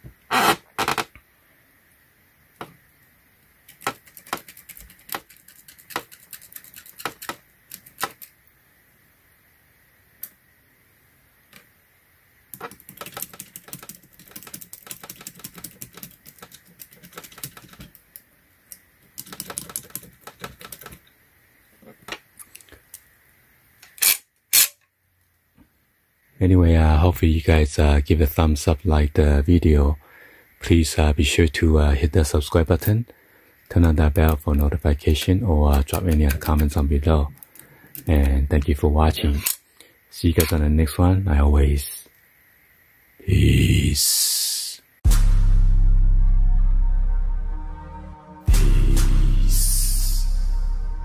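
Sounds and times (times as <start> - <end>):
rapid clicking and rattling: 3.7 - 8.3, 12.5 - 18.0, 19.2 - 21.0.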